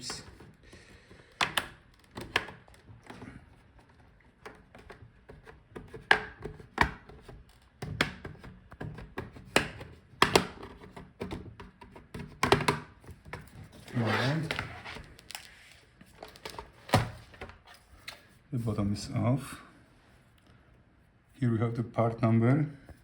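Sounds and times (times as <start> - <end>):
plastic scraping and rattling: 0.0 - 18.2
plastic clips snapping: 1.3 - 2.8.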